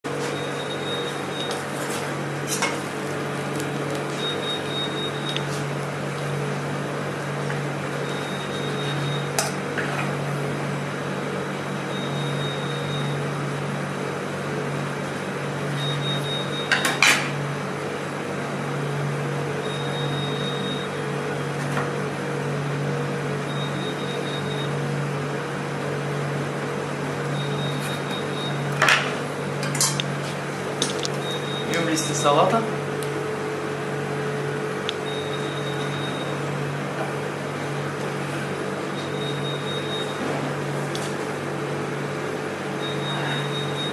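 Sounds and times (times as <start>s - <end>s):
kitchen equipment hum: 0.0s - 43.9s
dishes and utensils clinking: 29.6s - 30.0s.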